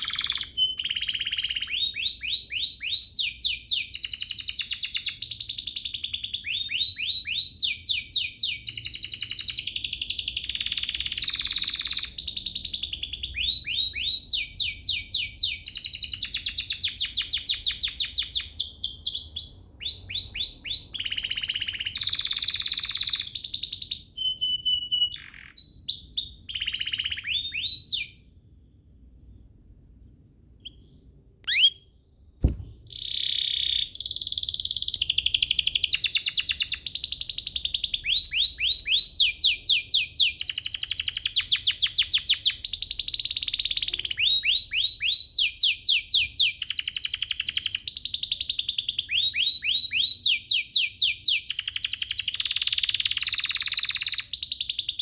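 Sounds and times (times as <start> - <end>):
canary trilling song: 0.0 - 29.0, 30.4 - 55.0
sharp knock: 32.4 - 33.0.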